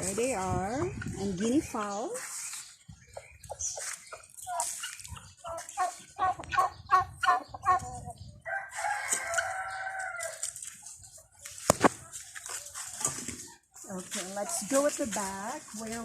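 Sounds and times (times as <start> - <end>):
rooster crowing: 8.5 - 10.4.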